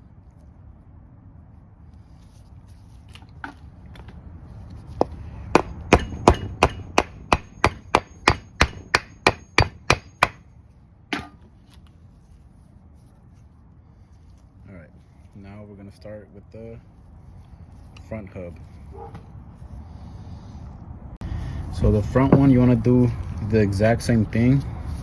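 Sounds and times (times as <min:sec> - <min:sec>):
hammer striking a wooden block: 0:05.0 - 0:10.4, 0:11.1 - 0:11.4, 0:22.2 - 0:22.6.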